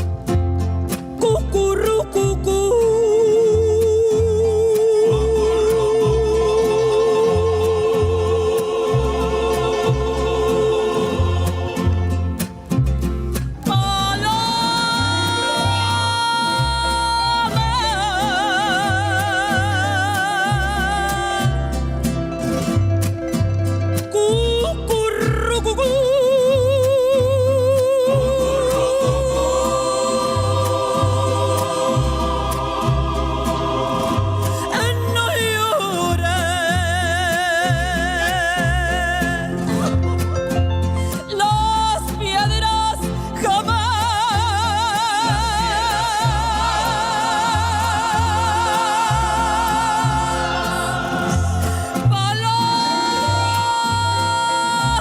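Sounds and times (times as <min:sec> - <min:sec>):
band with stepping bass: 0:00.0 - 0:02.4
repeating bass line: 0:01.4 - 0:23.8, 0:26.7 - 0:41.0, 0:43.7 - 0:55.0.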